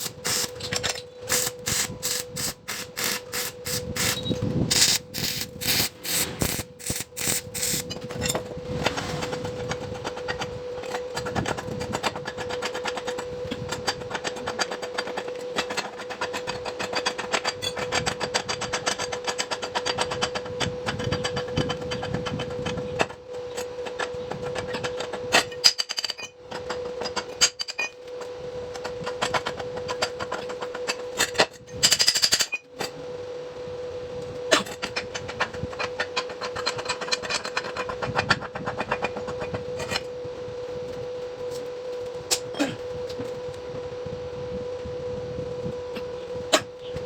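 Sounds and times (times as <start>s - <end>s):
tool clicking and scraping metal: 0.0s - 28.2s, 34.5s - 40.1s
steady hum: 0.0s - 47.0s.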